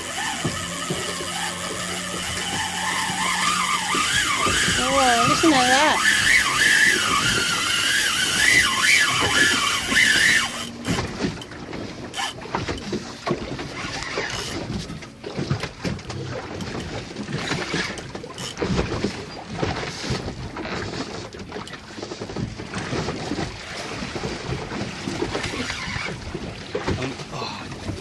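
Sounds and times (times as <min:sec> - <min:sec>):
fishing reel drag squealing: 0:00.0 - 0:11.5, 0:12.1 - 0:12.9, 0:13.8 - 0:14.7, 0:16.6 - 0:18.6, 0:25.4 - 0:26.2.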